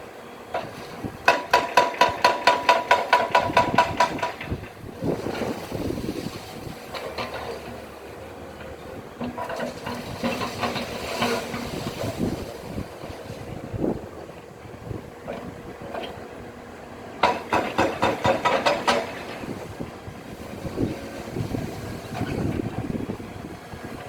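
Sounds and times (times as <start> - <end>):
machine running noise: 0.0 - 24.0
machinery clanking and knocking: 0.5 - 14.0, 17.1 - 24.0.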